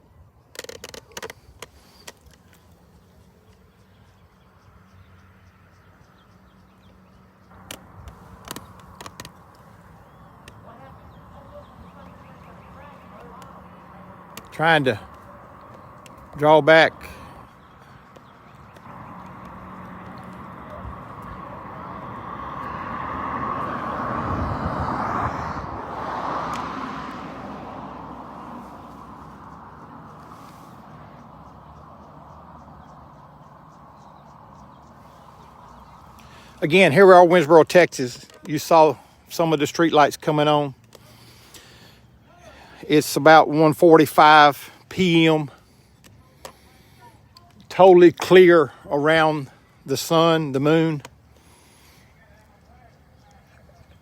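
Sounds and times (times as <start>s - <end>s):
vehicle driving past: 2.6s - 38.0s
microphone handling clicks: 7.6s - 9.7s.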